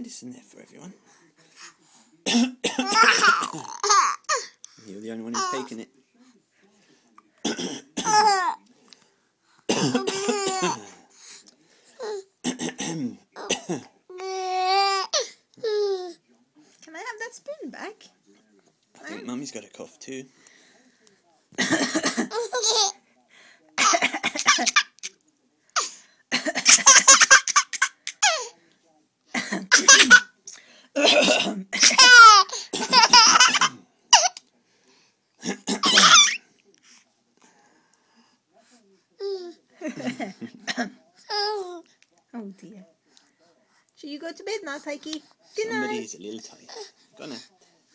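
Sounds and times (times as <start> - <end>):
adult coughing: 2.2 - 4.2, 9.7 - 11.0, 21.6 - 22.9, 23.8 - 24.8, 29.3 - 30.3, 31.0 - 34.3, 35.4 - 36.4, 39.9 - 41.0
baby laughing: 31.9 - 34.4.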